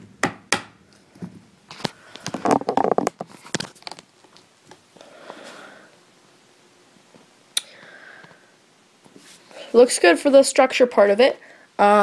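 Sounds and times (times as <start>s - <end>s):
hammer striking wood: 0.2s - 0.8s
knocking clattering and rustling: 2.3s - 4.0s.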